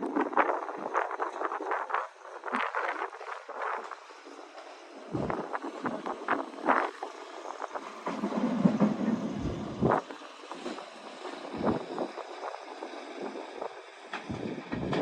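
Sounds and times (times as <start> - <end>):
wind buffeting microphone: 0.0 - 15.0
low thumps and rumble: 5.1 - 7.0, 7.7 - 10.1, 11.4 - 12.2, 14.2 - 15.0.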